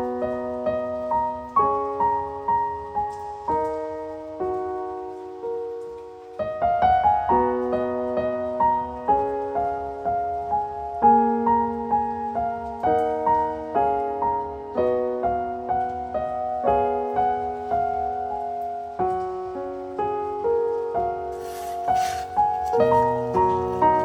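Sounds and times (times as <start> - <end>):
gentle solo piano piece: 0.0 - 24.0
brief hiss: 21.4 - 23.5.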